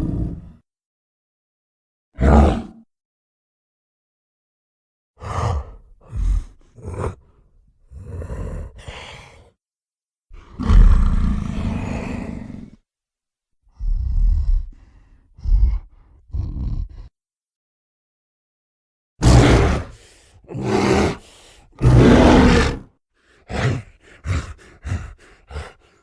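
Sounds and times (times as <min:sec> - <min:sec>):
gorilla roaring: 0:02.2 - 0:02.8, 0:10.5 - 0:12.7, 0:19.2 - 0:22.9
gorilla grunts and huffs: 0:05.2 - 0:09.6, 0:13.7 - 0:17.2, 0:19.2 - 0:26.0.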